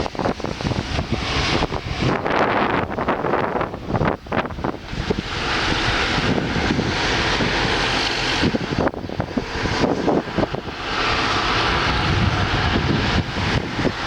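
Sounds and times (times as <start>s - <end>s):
car road noise: 0.0s - 14.0s
wind on microphone: 0.0s - 14.0s.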